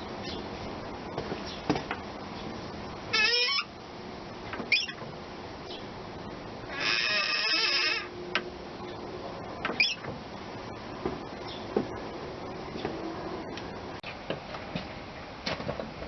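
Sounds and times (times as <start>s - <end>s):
tractor clutch squealing: 3.1s - 3.7s, 4.7s - 5.0s, 6.7s - 8.2s, 9.7s - 10.1s.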